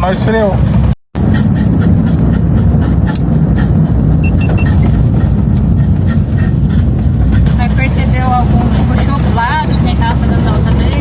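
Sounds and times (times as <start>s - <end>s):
vehicle engine driving: 0.0s - 11.0s
short high beeps: 4.2s - 4.7s.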